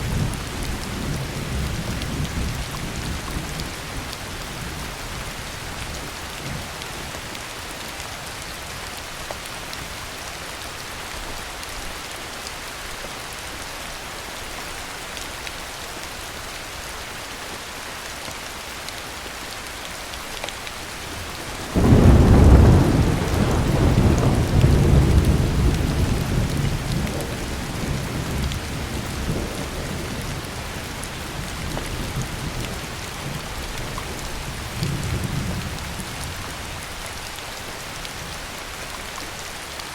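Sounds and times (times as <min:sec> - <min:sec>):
heavy rain: 0:00.0 - 0:39.9
thunder rumbling: 0:21.1 - 0:33.6.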